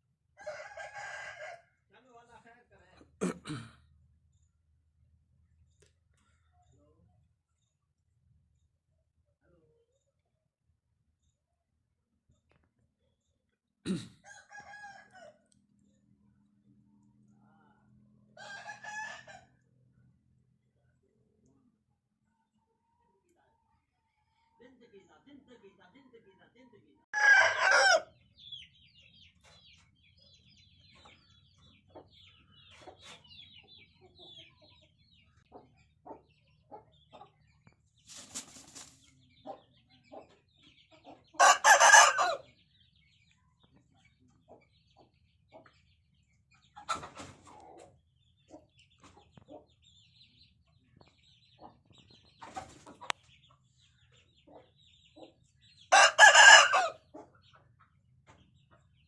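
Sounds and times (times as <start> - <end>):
rooster crowing: 27.2 - 28.1, 41.4 - 42.4, 55.9 - 57.0
chicken clucks: 28.6 - 59.0.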